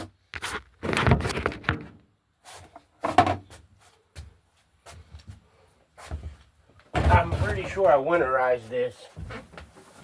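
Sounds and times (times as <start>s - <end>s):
objects knocking and scraping: 0.0s - 2.0s, 2.6s - 3.7s, 6.2s - 7.9s.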